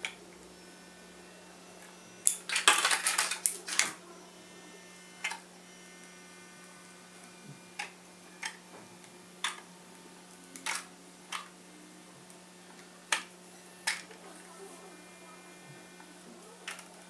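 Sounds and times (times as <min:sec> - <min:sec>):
electrical hum: 0:00.0 - 0:17.0
sharp plastic clicks and taps: 0:07.8 - 0:09.7, 0:10.6 - 0:11.5, 0:13.9 - 0:14.2.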